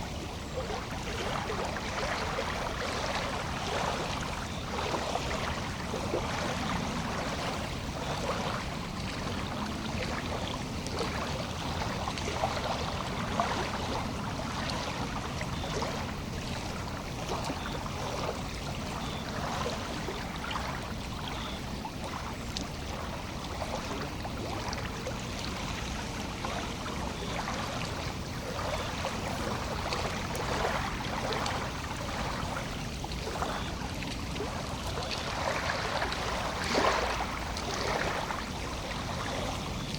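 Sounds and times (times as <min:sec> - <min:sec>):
lake water lapping: 0:00.0 - 0:39.9.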